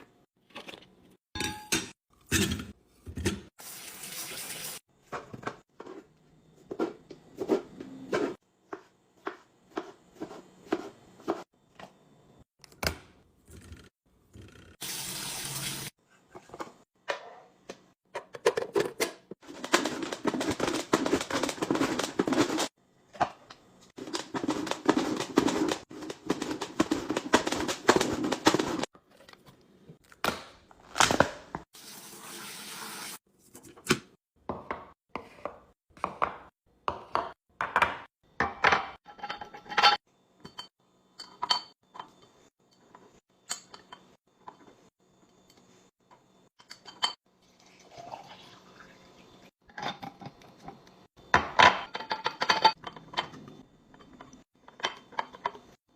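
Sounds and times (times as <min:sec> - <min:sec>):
items clinking and knocking: 0:16.4 - 0:30.1, 0:49.7 - 0:55.8.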